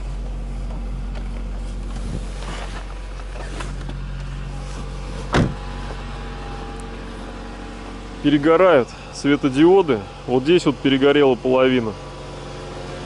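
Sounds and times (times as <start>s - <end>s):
engine idling: 0.0s - 13.0s
loud thud: 5.2s - 5.7s.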